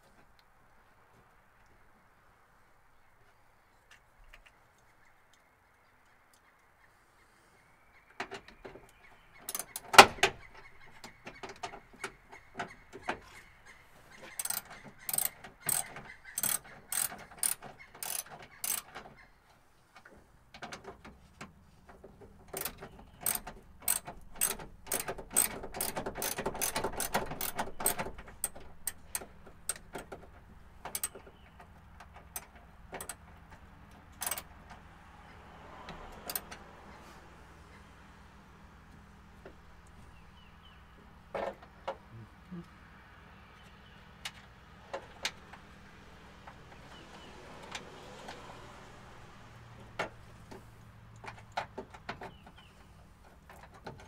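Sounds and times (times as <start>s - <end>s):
ratchet wrench clicking: 9.5s - 9.8s, 14.4s - 15.8s, 16.4s - 18.9s, 22.6s - 29.8s, 30.9s - 31.2s, 34.2s - 34.5s, 36.2s - 36.5s.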